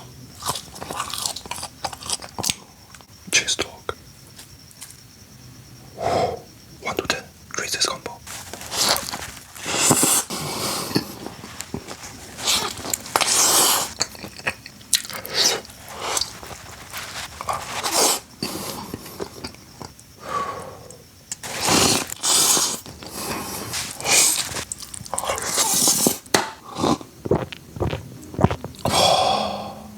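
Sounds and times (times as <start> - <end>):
person chewing food: 0.3 - 3.1, 8.3 - 29.9.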